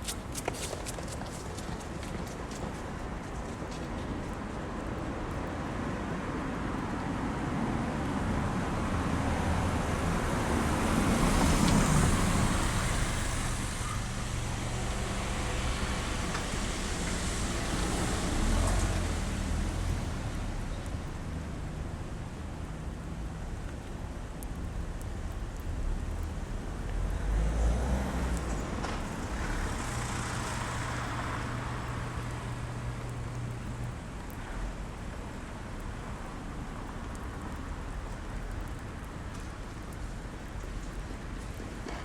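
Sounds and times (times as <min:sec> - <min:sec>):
tyres hissing on wet road: 0:00.0 - 0:42.0
passing vehicle engines rumbling: 0:07.9 - 0:23.1, 0:25.8 - 0:35.1.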